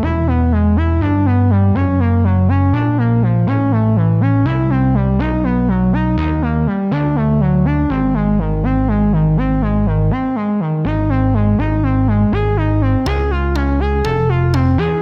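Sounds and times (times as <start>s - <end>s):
bass line: 0.0s - 15.0s
synthesizer and electric piano music: 12.4s - 15.0s.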